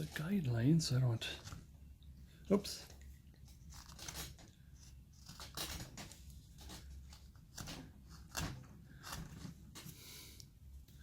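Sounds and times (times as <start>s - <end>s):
carving tool scraping wood: 7.5s - 10.0s.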